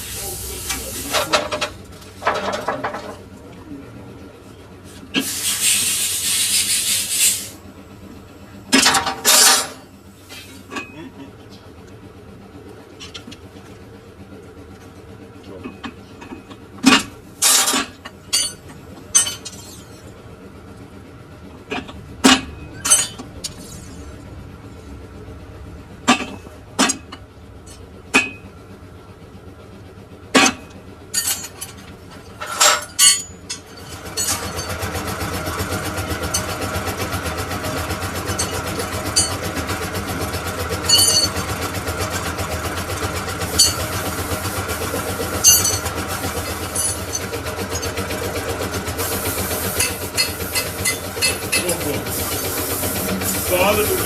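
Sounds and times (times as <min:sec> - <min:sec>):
steel parts and tools clanking: 0:00.0 - 0:03.2, 0:08.7 - 0:11.1, 0:15.6 - 0:20.1, 0:21.7 - 0:24.2, 0:26.1 - 0:28.4, 0:30.4 - 0:35.0, 0:36.2 - 0:36.7, 0:38.2 - 0:39.7, 0:40.8 - 0:41.6, 0:43.4 - 0:48.2, 0:49.0 - 0:54.0
machine rattling hum: 0:00.0 - 0:54.0.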